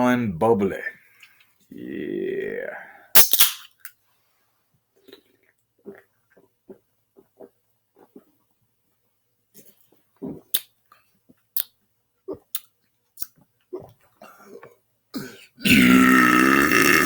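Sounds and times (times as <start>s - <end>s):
man gulping seltzer: 5.0s - 8.5s, 9.6s - 10.7s, 13.2s - 17.0s
loud belch: 15.2s - 17.0s.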